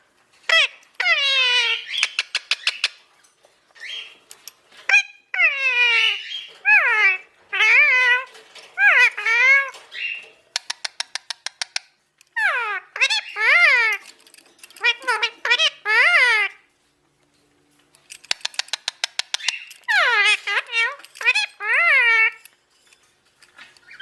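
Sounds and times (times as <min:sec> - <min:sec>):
parrot calling: 0:00.5 - 0:03.0, 0:04.8 - 0:14.1, 0:14.8 - 0:16.7, 0:18.3 - 0:22.5.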